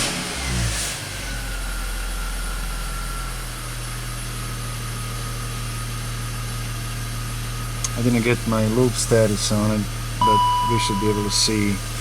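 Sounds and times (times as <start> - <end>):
engine whine: 10.2 - 12.0.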